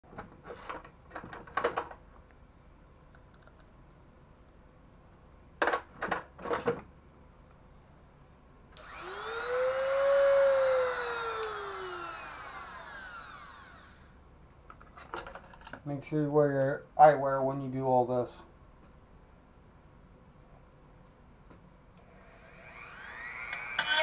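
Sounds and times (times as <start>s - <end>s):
rotary tool motor whine: 8.8s - 14.2s, 22.0s - 24.0s.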